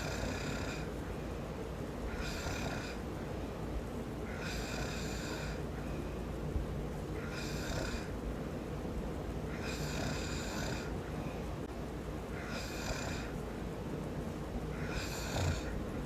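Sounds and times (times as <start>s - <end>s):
man snoring: 0.0s - 1.0s, 2.1s - 3.0s, 4.2s - 5.6s, 7.2s - 8.1s, 9.5s - 11.0s, 12.4s - 13.4s, 14.7s - 15.8s.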